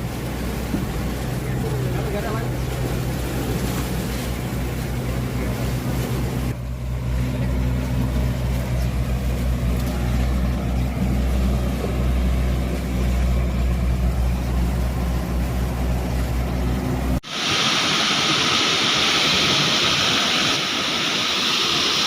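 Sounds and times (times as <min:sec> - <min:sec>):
low engine hum: 0:00.0 - 0:22.0
rushing noise: 0:16.6 - 0:22.0.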